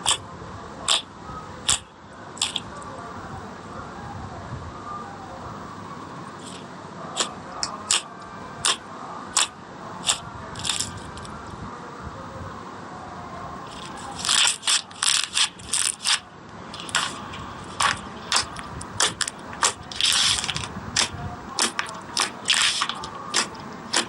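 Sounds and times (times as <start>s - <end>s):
slime squishing with wet pops: 0.9s - 2.7s, 7.2s - 11.3s, 13.7s - 16.2s, 16.8s - 24.0s.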